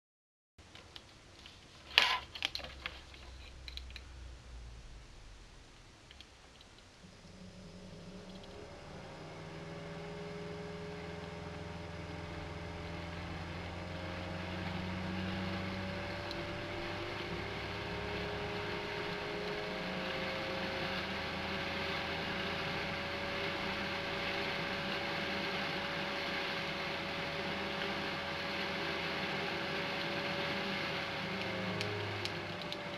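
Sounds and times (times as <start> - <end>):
computer fan spinning: 0.6 - 32.9.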